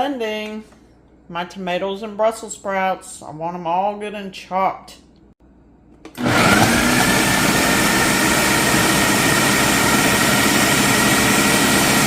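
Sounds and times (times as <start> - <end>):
blender running at high speed: 6.2 - 12.0.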